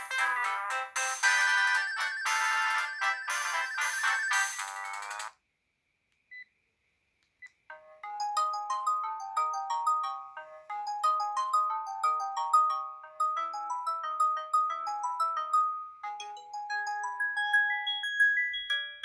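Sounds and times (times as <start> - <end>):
phone ringtone melody: 0.0 - 5.3, 7.7 - 19.0.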